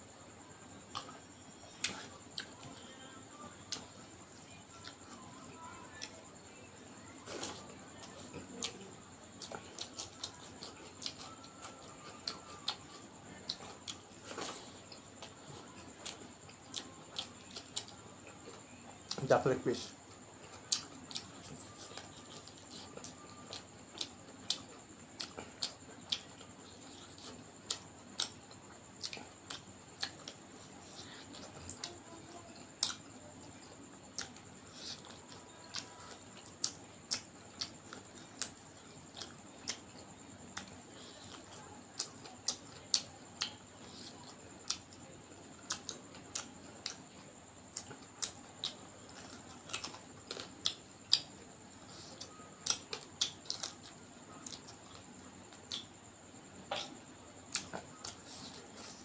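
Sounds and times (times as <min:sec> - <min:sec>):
person chewing food: 0:07.0 - 0:19.2, 0:20.0 - 0:59.0.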